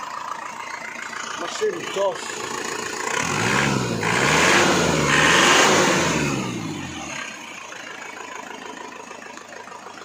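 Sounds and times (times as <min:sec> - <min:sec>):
diesel engine revving and idling: 0:00.0 - 0:10.0.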